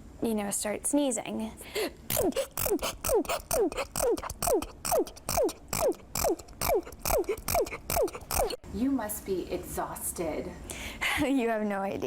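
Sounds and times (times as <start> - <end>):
girl sneezing: 2.1 - 4.4.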